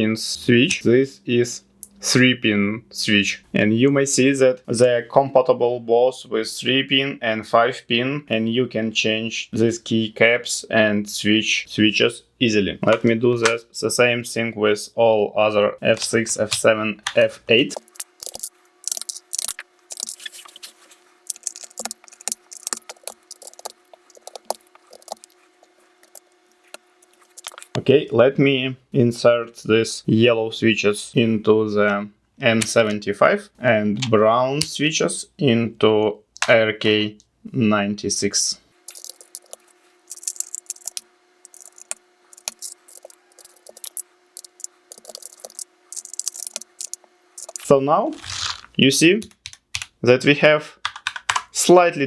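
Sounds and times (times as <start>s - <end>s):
keycaps snapping on: 49.2s - 50.0s, 50.8s - 51.5s
plastic keycap clicks and clatters: 50.9s - 51.5s.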